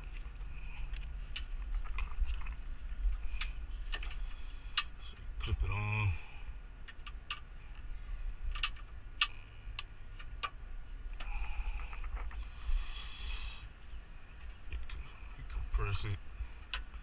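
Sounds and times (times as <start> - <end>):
low rumble: 0.0 - 6.9.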